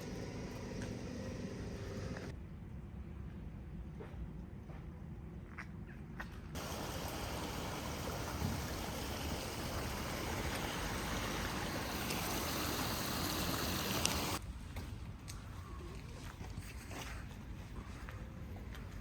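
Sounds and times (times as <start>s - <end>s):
running water rushing: 6.6s - 14.4s.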